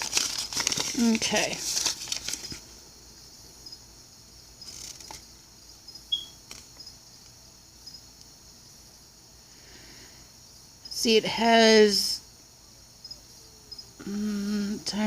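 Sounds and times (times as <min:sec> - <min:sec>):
paper rustling: 0:00.0 - 0:02.8, 0:04.6 - 0:05.3
faint high-pitched chirring: 0:05.8 - 0:07.0, 0:10.0 - 0:15.0
short high beep: 0:06.1 - 0:06.4.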